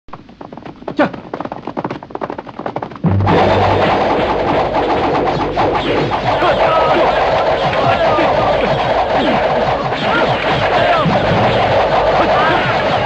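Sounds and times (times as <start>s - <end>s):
falling whoosh: 3.0s - 13.0s
loud music: 3.0s - 13.0s.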